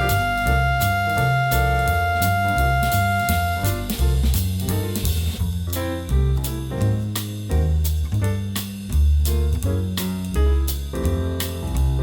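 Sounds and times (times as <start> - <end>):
bass line: 0.0 - 12.0
instrumental music with steady beat: 0.0 - 12.0.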